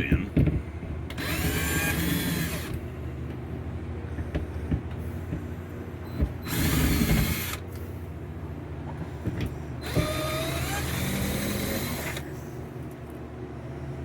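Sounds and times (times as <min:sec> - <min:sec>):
power drill whining: 0:01.1 - 0:02.8, 0:06.4 - 0:07.6, 0:09.8 - 0:12.3.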